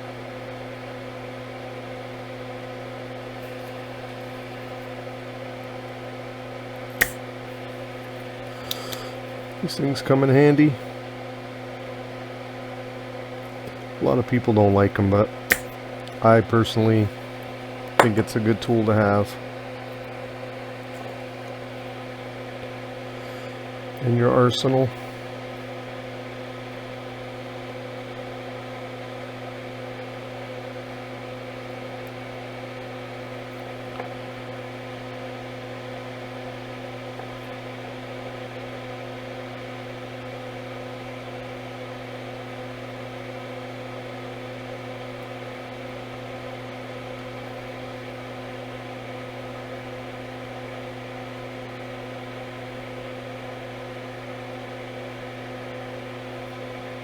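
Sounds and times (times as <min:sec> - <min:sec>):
electrical hum: 0:00.0 - 0:57.0.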